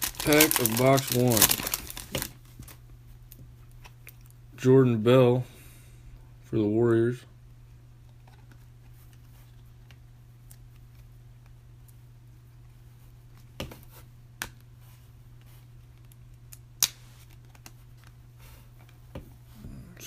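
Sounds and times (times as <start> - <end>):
trading cards rustling: 0.0 - 2.8
steady low hum: 0.0 - 20.0.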